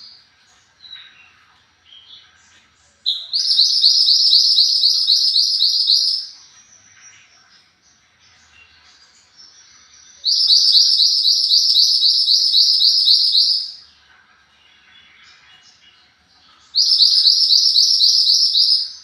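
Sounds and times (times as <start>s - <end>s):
faint bird chirps: 0.0s - 19.0s
bird trilling high notes: 3.1s - 6.4s, 10.2s - 13.8s, 16.8s - 19.0s.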